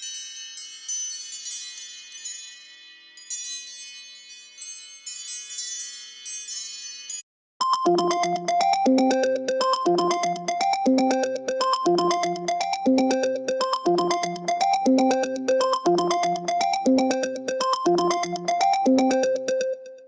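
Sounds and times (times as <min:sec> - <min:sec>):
tinkling chime ringtone: 0:00.0 - 0:20.0
synth ringtone melody: 0:07.6 - 0:20.0.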